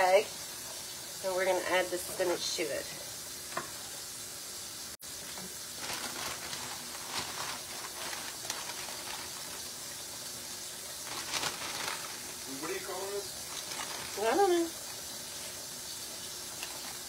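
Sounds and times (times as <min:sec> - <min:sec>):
soup simmering and sizzling: 0:00.0 - 0:17.0
spinach rustling into pot: 0:05.1 - 0:17.0.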